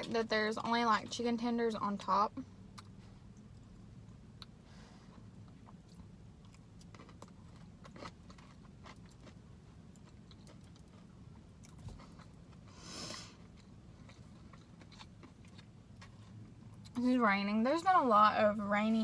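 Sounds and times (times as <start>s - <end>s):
low steady hum: 0.0s - 19.0s
person chewing crunchy food: 2.7s - 17.0s.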